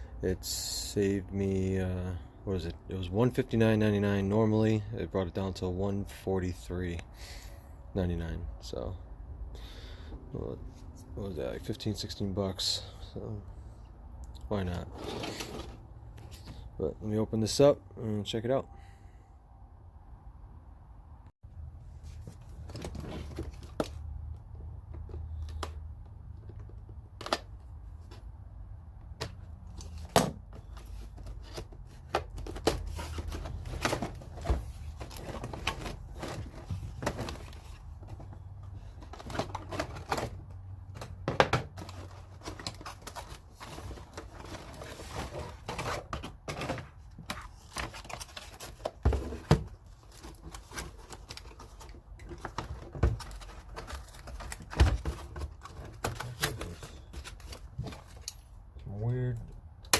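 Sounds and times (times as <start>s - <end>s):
packaging rustling and tearing: 41.8s - 58.3s.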